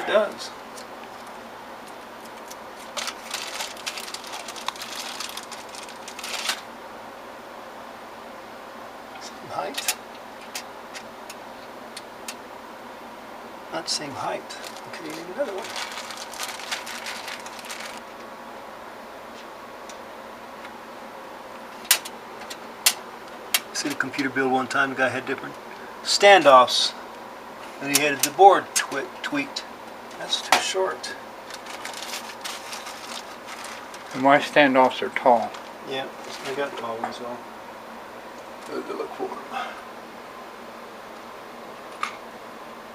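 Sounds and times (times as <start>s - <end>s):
steady low hum: 0.0s - 42.9s
small parts clicking and rattling: 2.2s - 6.6s.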